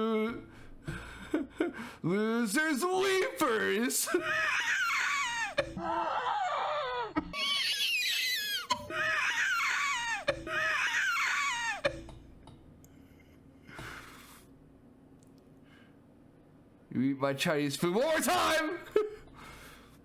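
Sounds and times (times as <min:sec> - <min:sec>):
lynx wailing: 0:03.4 - 0:12.0.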